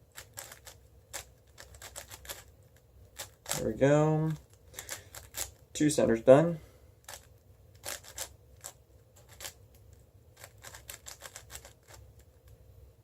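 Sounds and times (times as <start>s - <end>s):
puzzle cube plastic clicking: 0.1s - 3.6s, 4.2s - 5.6s, 7.0s - 12.6s.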